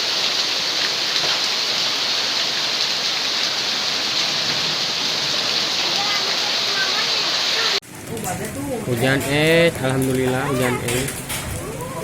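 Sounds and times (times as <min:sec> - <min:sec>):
hail and heavy rain pelting: 0:00.0 - 0:12.0.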